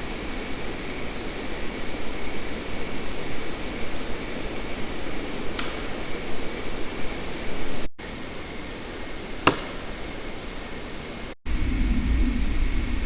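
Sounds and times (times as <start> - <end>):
steady recording hiss: 0.0 - 11.4
sharp click: 5.6 - 6.3, 9.4 - 10.1.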